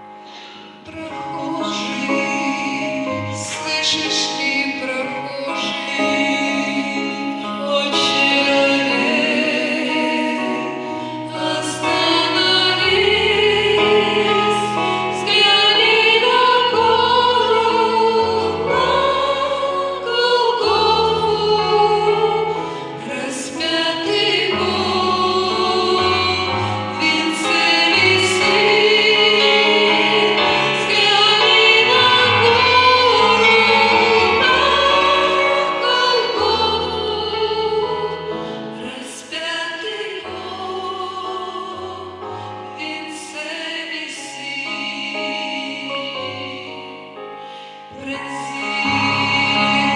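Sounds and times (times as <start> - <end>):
choir singing slow worship song: 0.0 - 49.9
held low accompanying notes: 0.8 - 38.9.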